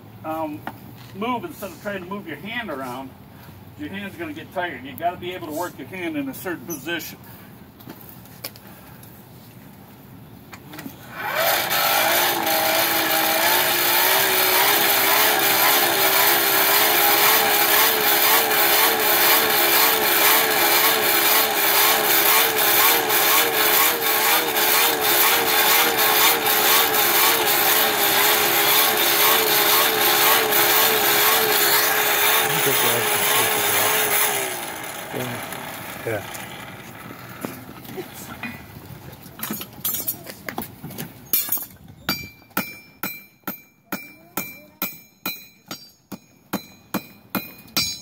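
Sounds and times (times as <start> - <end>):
small electric motor humming: 11.1 - 37.5.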